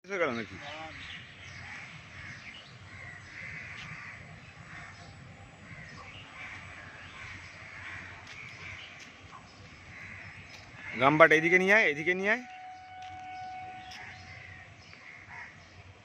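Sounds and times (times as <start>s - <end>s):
outdoor background noise: 0.0s - 16.0s
birds harsh calls: 0.2s - 16.0s.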